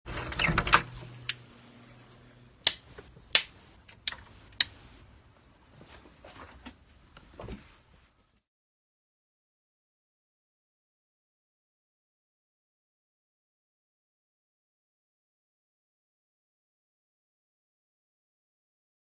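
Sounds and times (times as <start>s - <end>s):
low steady hum: 0.1s - 8.4s
sharp clicks and knocks: 2.6s - 4.8s.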